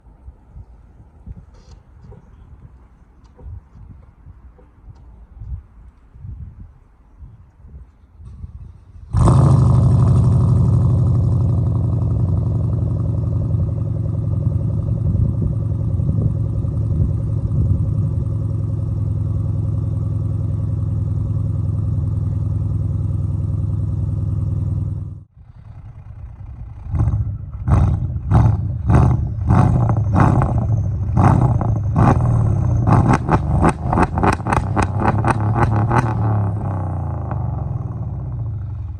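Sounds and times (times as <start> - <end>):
engine throttle blips: 8.2 - 38.9.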